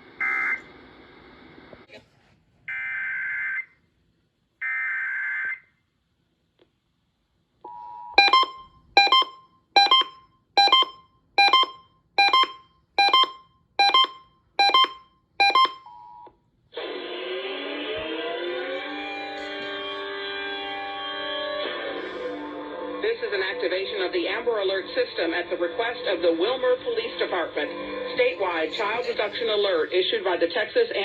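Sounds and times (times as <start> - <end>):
music: 17.9 - 29.2.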